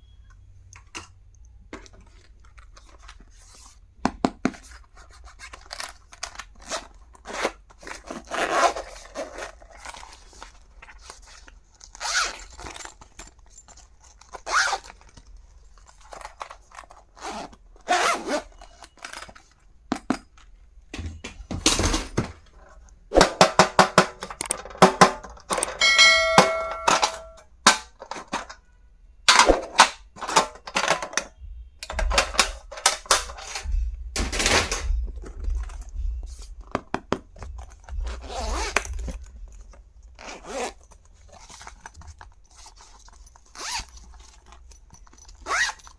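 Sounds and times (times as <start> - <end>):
short ringing tone: 25.8 - 27.4.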